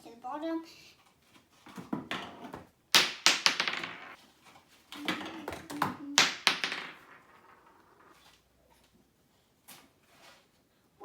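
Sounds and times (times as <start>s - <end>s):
marble clattering down marble run: 1.8s - 4.2s, 5.0s - 8.2s.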